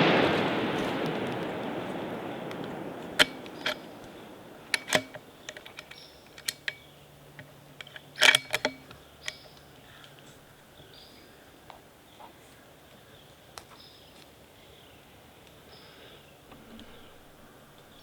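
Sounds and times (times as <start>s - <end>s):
gunshot echo: 0.0s - 5.2s
rifle action metallic clicks: 2.5s - 10.2s.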